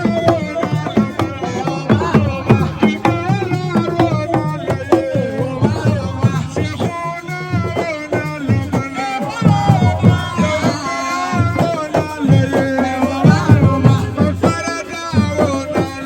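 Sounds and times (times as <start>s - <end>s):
rapid hand-drum strikes: 0.0s - 16.0s.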